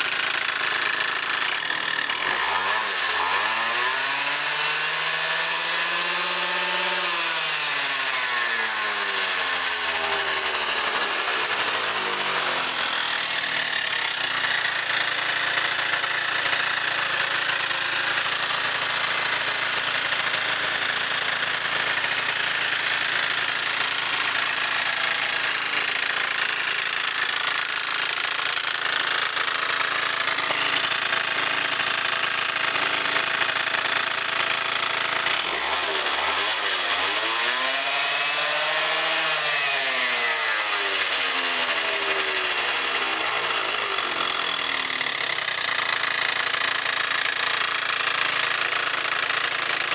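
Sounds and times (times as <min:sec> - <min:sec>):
scooter engine idling: 0:00.0 - 0:04.4, 0:07.6 - 0:37.2, 0:40.7 - 0:49.9.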